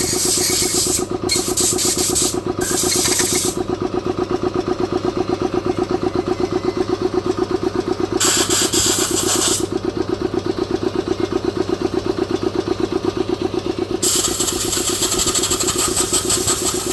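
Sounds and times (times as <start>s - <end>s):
hiss: 0.0s - 3.6s, 8.2s - 9.7s, 14.0s - 16.9s
diesel engine running: 0.0s - 16.9s.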